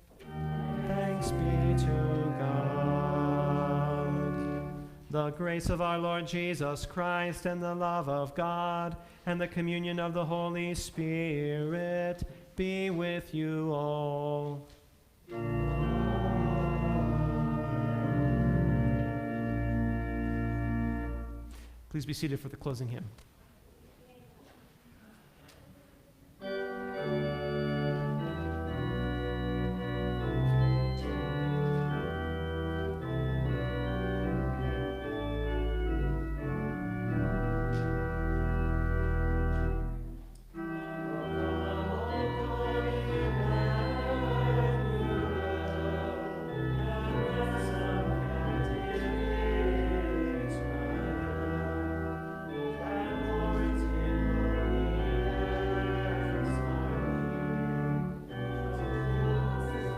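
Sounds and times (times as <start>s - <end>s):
church organ playing hymn chords: 0.0s - 22.3s, 26.4s - 59.9s.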